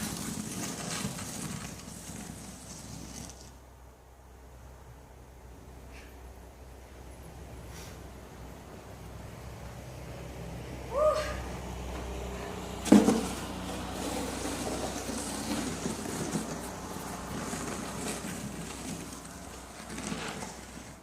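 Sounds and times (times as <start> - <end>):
shovel scraping snow: 0.0 - 3.5, 12.9 - 21.0.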